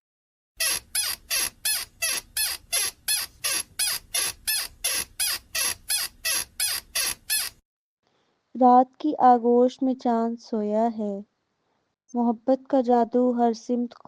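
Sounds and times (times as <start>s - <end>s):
rhythmic squeaking: 0.6s - 7.6s.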